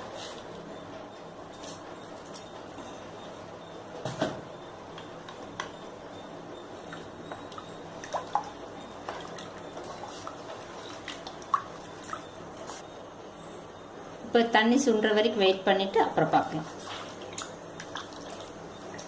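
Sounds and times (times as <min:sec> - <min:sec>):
pot boiling with bubbles plopping: 0:01.9 - 0:13.0, 0:16.4 - 0:19.0.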